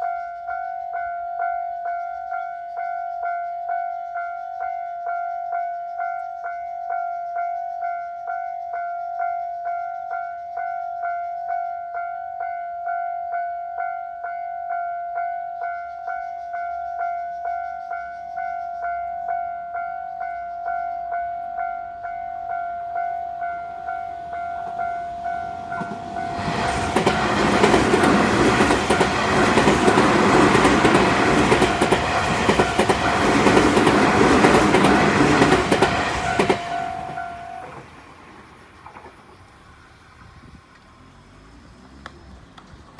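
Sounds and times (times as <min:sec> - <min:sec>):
level-crossing warning bell: 0:00.0 - 0:40.6
train passing: 0:18.8 - 0:42.9.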